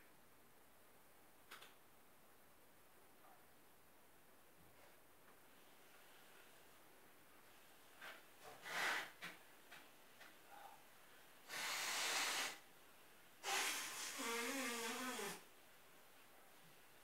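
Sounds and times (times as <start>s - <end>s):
forceful breath through nose: 11.5s - 12.6s.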